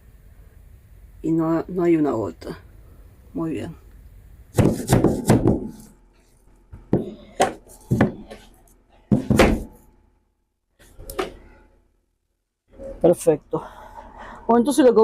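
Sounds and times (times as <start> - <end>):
knocks and thunks on wood: 4.5 - 5.9, 6.8 - 8.4, 9.1 - 9.8.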